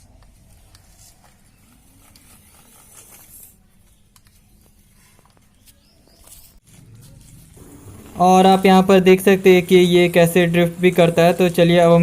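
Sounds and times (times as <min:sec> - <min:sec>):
low hum: 0:06.8 - 0:11.4.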